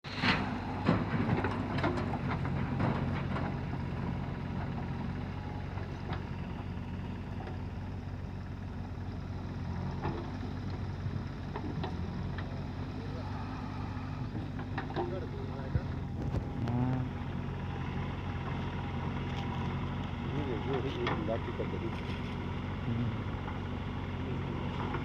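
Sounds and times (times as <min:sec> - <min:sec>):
heavy diesel engine running: 0:00.0 - 0:25.0.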